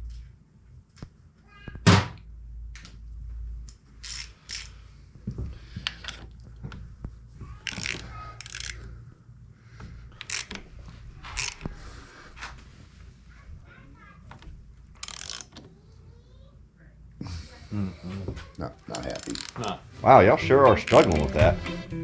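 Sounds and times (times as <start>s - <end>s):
ratchet strokes: 4.0s - 4.8s, 7.6s - 8.8s, 11.3s - 11.6s, 15.0s - 15.5s, 19.1s - 19.7s.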